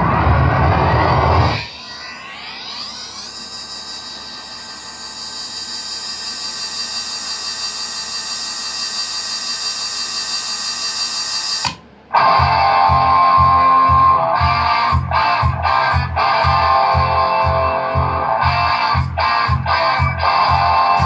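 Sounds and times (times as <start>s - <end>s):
strummed electric guitar: 0.0s - 2.3s, 11.7s - 21.0s
high-pitched buzzing drone: 0.0s - 21.0s.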